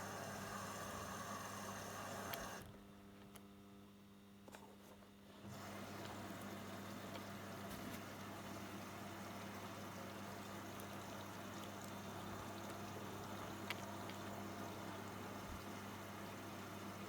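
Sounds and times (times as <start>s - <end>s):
water pouring into washing machine: 5.4s - 17.0s.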